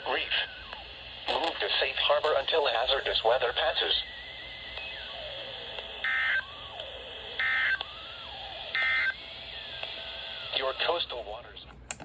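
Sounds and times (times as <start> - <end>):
radio hiss: 0.0 - 6.0, 9.1 - 11.6.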